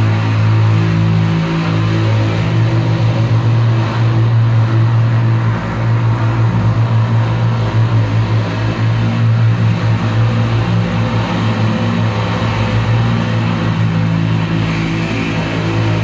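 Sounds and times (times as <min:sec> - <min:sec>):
distorted electric guitar drone: 0:00.0 - 0:16.0.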